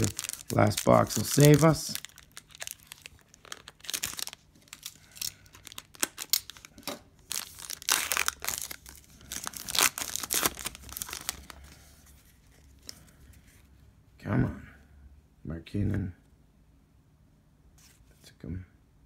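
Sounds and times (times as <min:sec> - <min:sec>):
plastic wrapping tearing and crinkling: 0:00.0 - 0:11.6.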